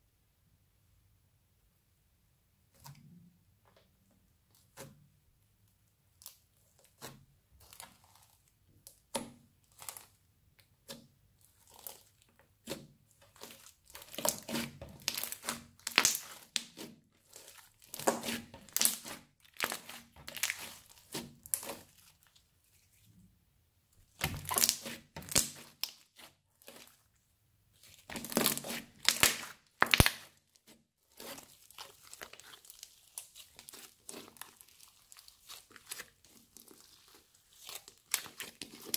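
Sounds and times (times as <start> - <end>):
crunchy slime crackling and popping: 6.1 - 10.2, 10.8 - 23.0, 24.1 - 38.9.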